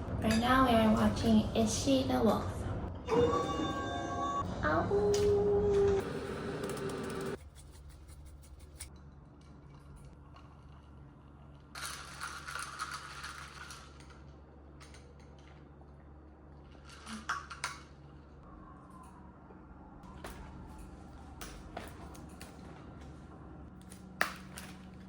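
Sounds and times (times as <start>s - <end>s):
objects clicking and rattling: 6.6s - 15.7s, 16.6s - 18.3s.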